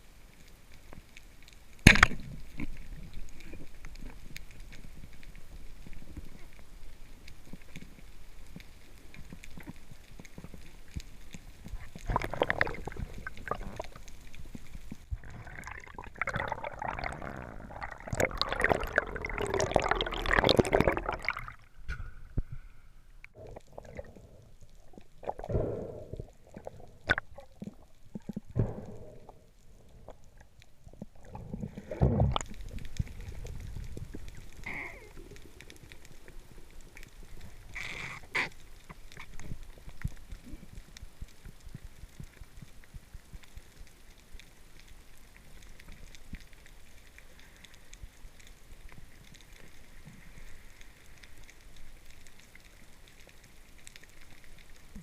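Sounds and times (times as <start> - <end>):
underwater gurgling and bubbling: 8.8 - 21.8, 23.4 - 43.8.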